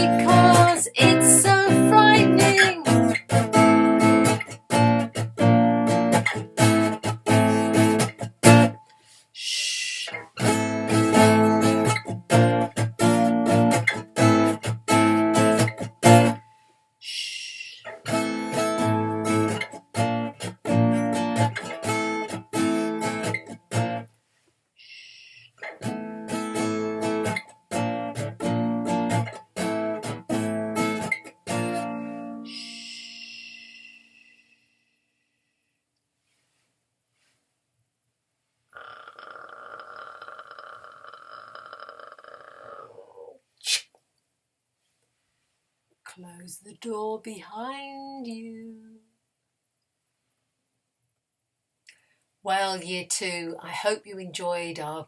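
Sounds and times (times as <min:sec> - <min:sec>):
acoustic guitar strumming: 0:00.0 - 0:08.9, 0:10.2 - 0:16.5, 0:17.9 - 0:24.1, 0:25.6 - 0:33.7
short hiss: 0:43.6 - 0:44.0.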